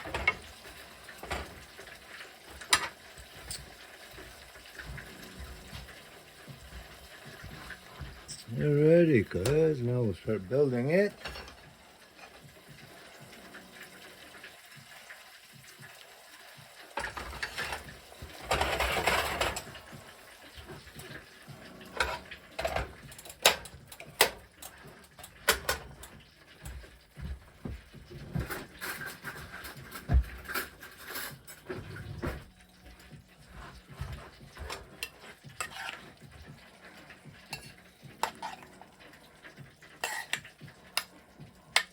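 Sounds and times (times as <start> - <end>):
utensils scraping on dishes: 2.5 - 3.7, 17.0 - 19.8, 21.9 - 26.2, 28.2 - 32.4, 33.4 - 38.9, 39.9 - 41.9.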